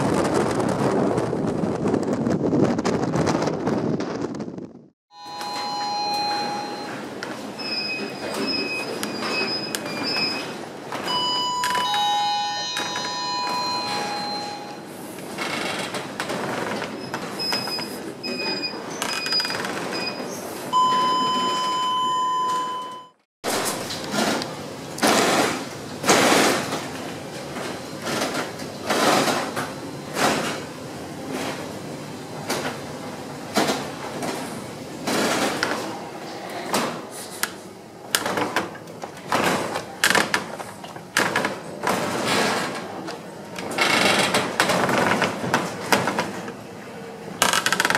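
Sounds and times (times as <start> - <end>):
short electronic beeps: 5.2 - 7.0, 20.8 - 23.2
doors and fittings rattling and banging: 33.5 - 36.0, 38.1 - 46.6.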